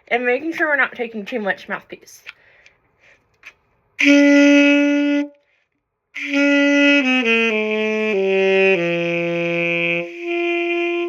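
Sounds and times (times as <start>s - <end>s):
alto saxophone descending scale: 4.0s - 5.4s, 6.2s - 11.0s.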